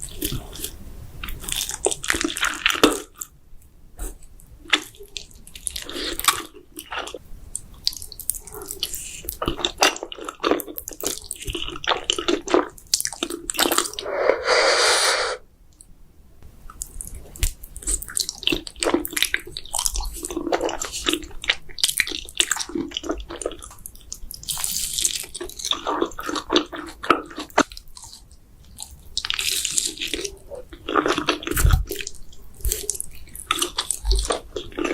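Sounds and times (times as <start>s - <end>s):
noodle slurp: 13.6s - 15.4s
wet chewing: 17.8s - 34.9s.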